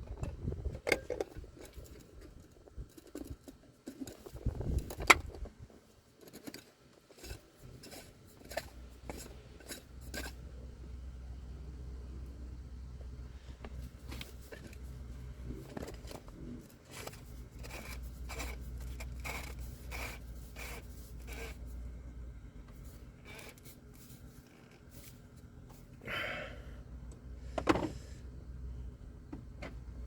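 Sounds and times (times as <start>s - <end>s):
scrape: 6.2s - 10.4s, 13.3s - 14.9s, 15.5s - 21.8s, 22.8s - 25.9s.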